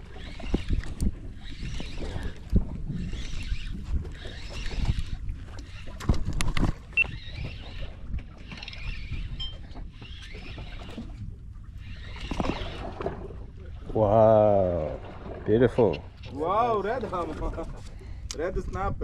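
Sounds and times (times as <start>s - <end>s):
water washing against boat hull: 9.2s - 17.9s.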